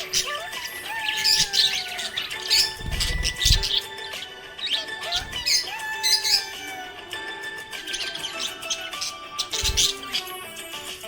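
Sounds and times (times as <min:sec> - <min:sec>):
budgerigar chirping: 0:00.0 - 0:06.8, 0:07.6 - 0:10.4
background music: 0:00.0 - 0:11.0.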